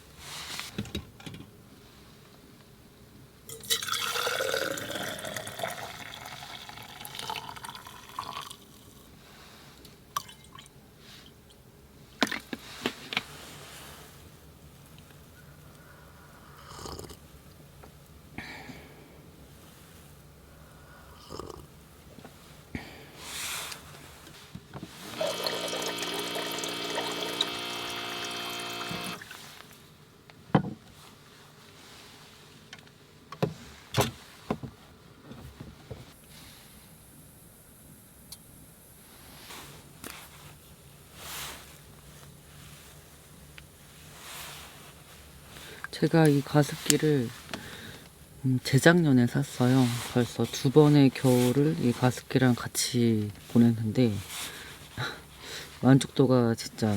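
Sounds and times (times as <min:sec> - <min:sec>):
water pouring into a bottle: 0:03.5 - 0:08.9, 0:25.1 - 0:29.4.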